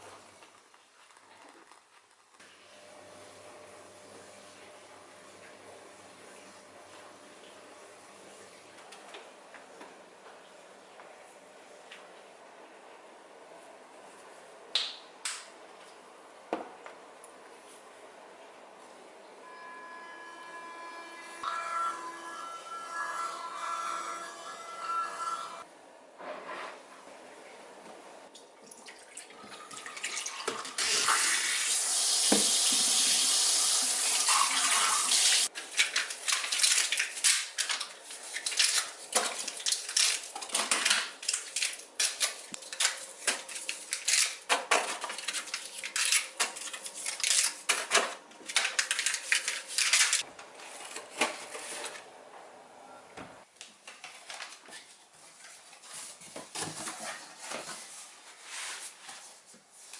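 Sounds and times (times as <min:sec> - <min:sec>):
splashing and clatter of washing: 0:28.6 - 0:31.3, 0:34.2 - 0:50.3
tap water running into sink: 0:28.7 - 0:35.5.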